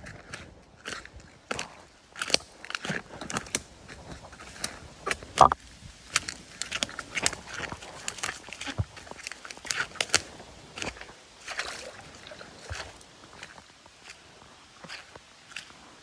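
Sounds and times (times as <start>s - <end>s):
footsteps crunching on leaves: 0.0s - 16.0s
twig snapping: 2.2s - 3.7s, 4.5s - 10.4s.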